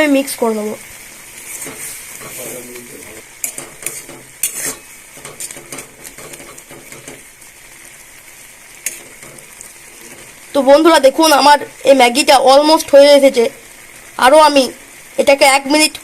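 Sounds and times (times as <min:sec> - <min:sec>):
simmering broth hissing: 0:00.0 - 0:16.0
spoon scraping a pan: 0:01.3 - 0:07.4, 0:08.8 - 0:10.5.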